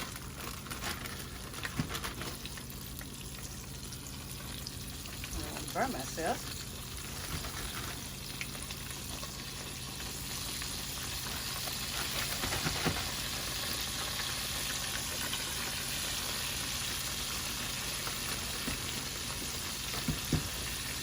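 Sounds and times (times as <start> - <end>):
chicken deep-frying sizzle: 0.0 - 21.0.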